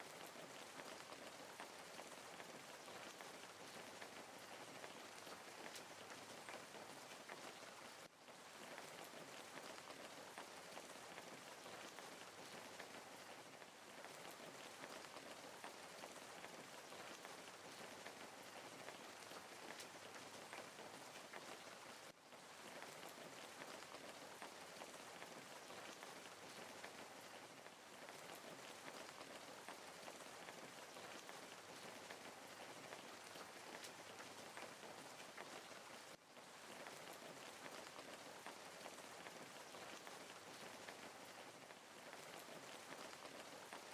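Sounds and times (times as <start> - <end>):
wood fire crackling: 0.0 - 43.9.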